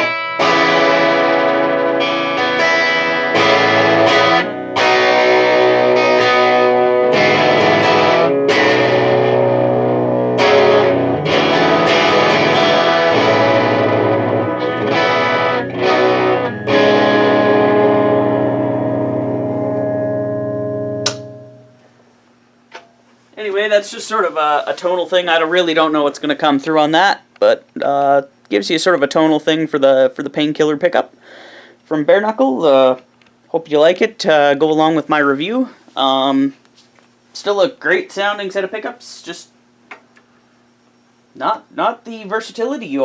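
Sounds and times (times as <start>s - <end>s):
clean electric guitar chords: 0.0s - 21.9s.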